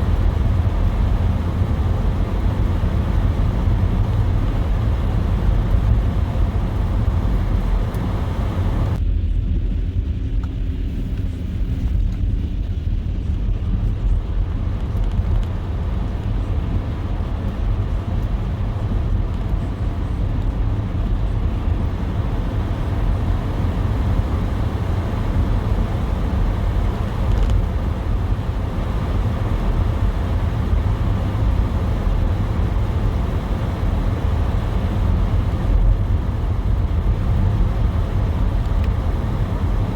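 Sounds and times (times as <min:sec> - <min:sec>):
engine and tyres rumbling: 0:00.0 - 0:39.9
road hiss: 0:02.2 - 0:09.0.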